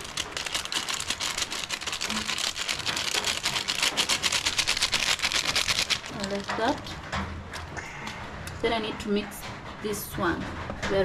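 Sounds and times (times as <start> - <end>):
utensil stirring dry mix in bowl: 0.0 - 7.0.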